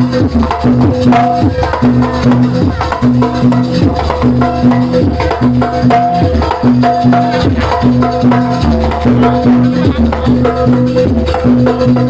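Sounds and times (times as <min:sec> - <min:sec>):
hand drums beating fast rhythm: 0:00.0 - 0:12.0
repeated pitched notes: 0:00.6 - 0:11.9.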